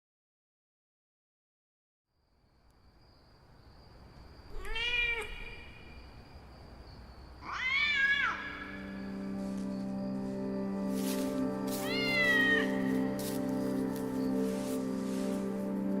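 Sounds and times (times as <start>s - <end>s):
cat meowing: 4.5s - 5.7s, 7.4s - 8.9s, 11.8s - 12.7s.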